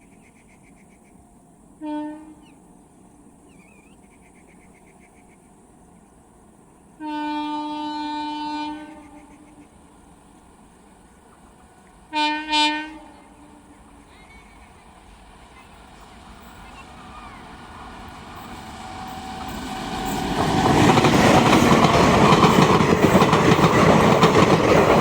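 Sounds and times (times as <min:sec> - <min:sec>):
train horn blasts: 0:01.8 - 0:02.6, 0:07.0 - 0:09.6, 0:12.1 - 0:14.0, 0:16.4 - 0:20.8.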